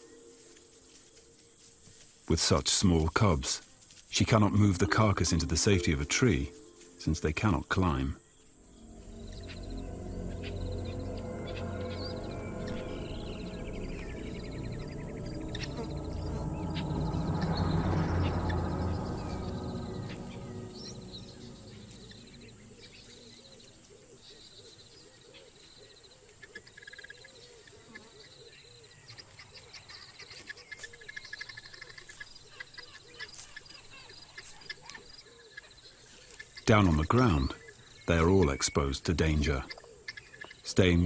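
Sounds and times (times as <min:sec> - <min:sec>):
insect calls: 0:00.0 - 0:41.0
background music: 0:03.4 - 0:23.8, 0:36.7 - 0:39.7
birds chirping and trilling: 0:04.2 - 0:41.0.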